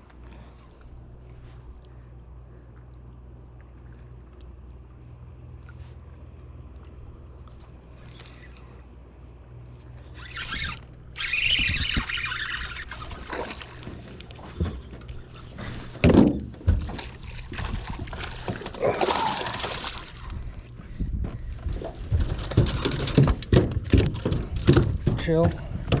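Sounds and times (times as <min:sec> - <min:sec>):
steady low hum: 0:00.0 - 0:26.0
water splashing and sloshing: 0:00.0 - 0:26.0.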